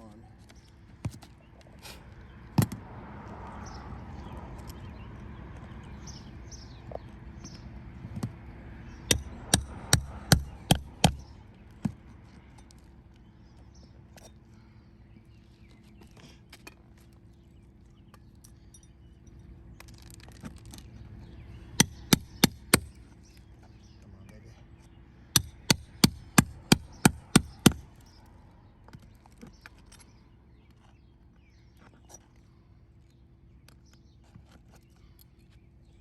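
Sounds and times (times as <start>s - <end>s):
hammer strikes: 9.1s - 11.3s, 21.8s - 22.9s, 25.4s - 27.9s.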